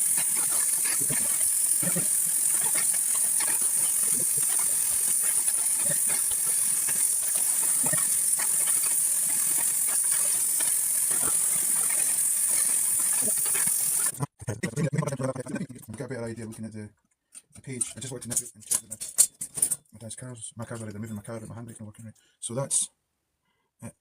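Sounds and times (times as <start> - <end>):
small crackles and clicks: 0.0 - 14.2
torch flame hissing: 0.0 - 14.2.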